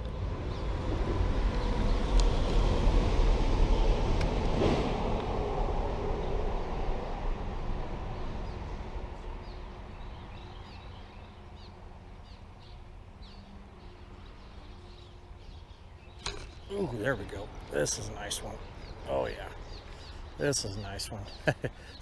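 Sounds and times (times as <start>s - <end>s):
low rumbling background noise: 0.0s - 22.0s
small bird chirping: 9.4s - 22.0s.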